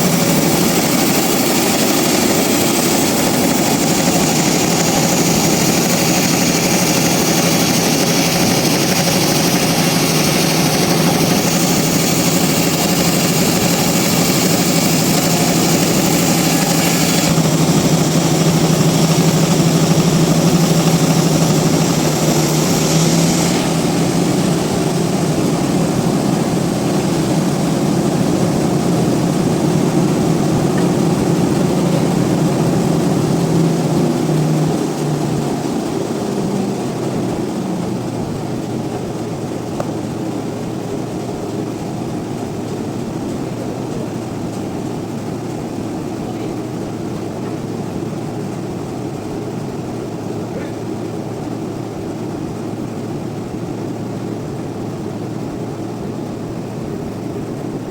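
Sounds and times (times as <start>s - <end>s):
sawmill machinery running: 0.0s - 57.9s.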